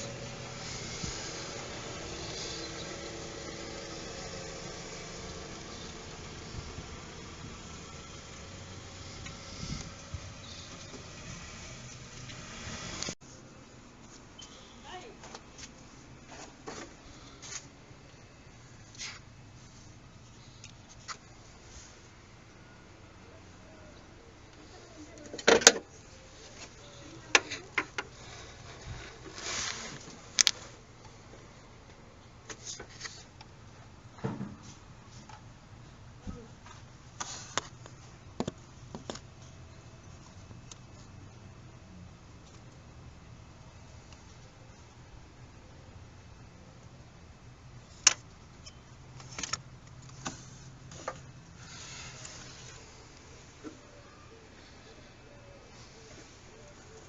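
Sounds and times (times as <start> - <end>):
soft rustle: 0.0 - 22.4, 25.9 - 33.4, 50.0 - 57.0.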